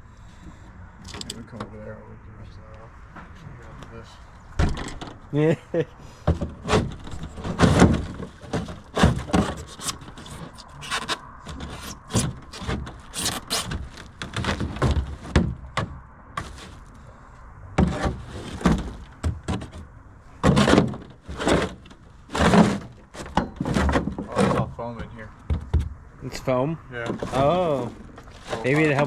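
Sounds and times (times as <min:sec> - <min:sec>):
knocks thuds and scraping: 0:04.6 - 0:05.3, 0:06.2 - 0:16.8, 0:17.8 - 0:26.0, 0:27.0 - 0:29.0
carpet and plywood tearing: 0:06.5 - 0:15.2, 0:20.4 - 0:24.4.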